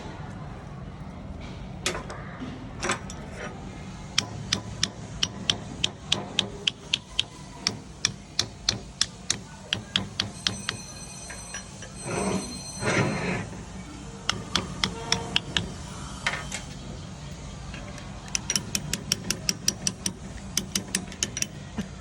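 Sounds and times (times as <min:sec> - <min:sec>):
steady low hum: 0:02.4 - 0:22.0
sharp clicks: 0:04.2 - 0:10.4, 0:17.8 - 0:22.0.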